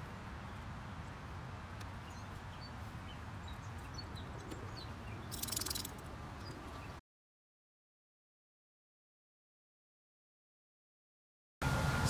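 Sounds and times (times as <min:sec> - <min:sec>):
bird chirps: 0:01.8 - 0:07.0.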